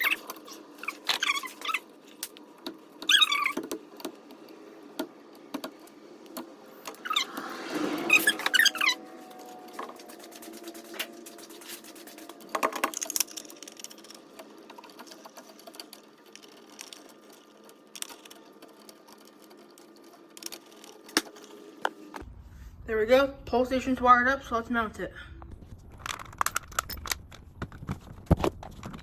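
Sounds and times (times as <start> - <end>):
faint steady hum: 21.9 - 29.0.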